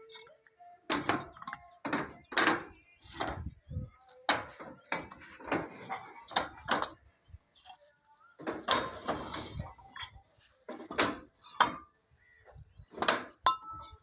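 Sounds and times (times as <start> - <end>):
building materials and tools knocking: 0.9 - 3.6, 4.2 - 7.0, 8.4 - 14.0.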